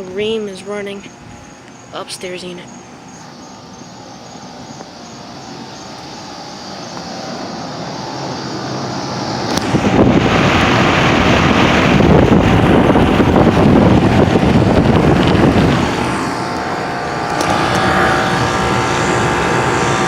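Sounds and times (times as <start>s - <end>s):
air conditioner unit humming: 0.0s - 20.0s
rush of air with low rumble: 6.2s - 20.0s.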